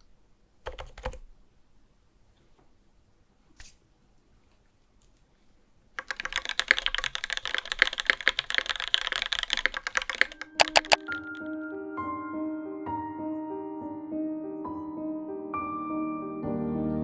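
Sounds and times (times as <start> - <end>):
fast typing on keyboard: 0.6 - 1.3, 6.0 - 11.5
sharp key clicks: 6.0 - 11.4
piano music: 9.6 - 17.0.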